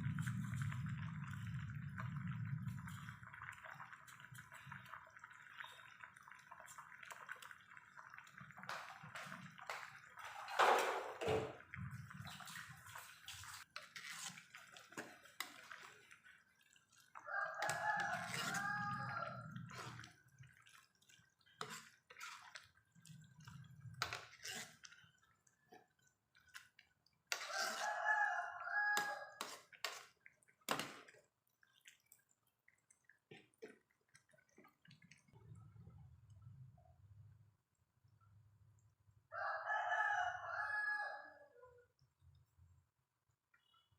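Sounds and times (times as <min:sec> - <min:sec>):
rooster crowing: 0:17.2 - 0:19.6, 0:27.4 - 0:29.4, 0:39.3 - 0:41.8.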